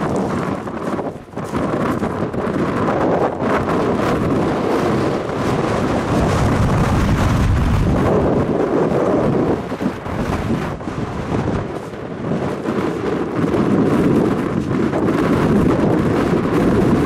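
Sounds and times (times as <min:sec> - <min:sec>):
gusting wind buffeting microphone: 0:00.0 - 0:17.0.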